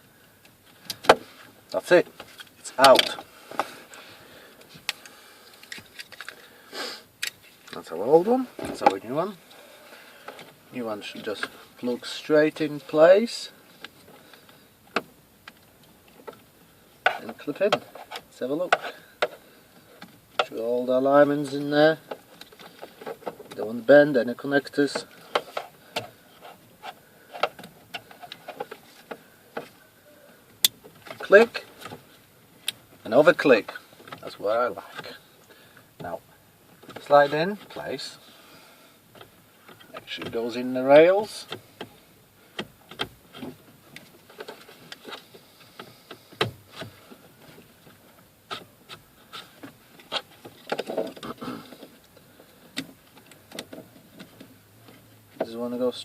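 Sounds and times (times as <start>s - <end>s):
plastic parts tapping and rubbing: 4.6s - 6.4s, 24.9s - 29.8s, 41.2s - 55.6s
plastic rubbing and scraping: 46.2s - 52.0s.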